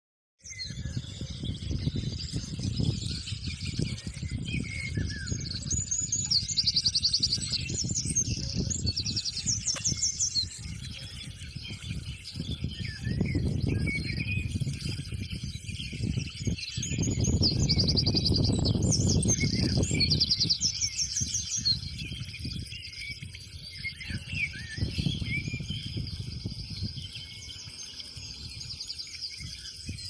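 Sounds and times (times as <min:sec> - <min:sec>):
birds singing and chirping: 0:00.4 - 0:30.0
fast rattling bird trills: 0:00.6 - 0:30.0.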